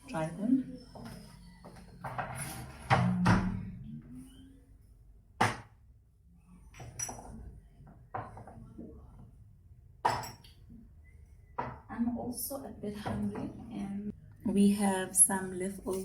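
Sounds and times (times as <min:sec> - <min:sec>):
glass jars knocking and clinking: 0:06.7 - 0:07.5, 0:10.0 - 0:10.6.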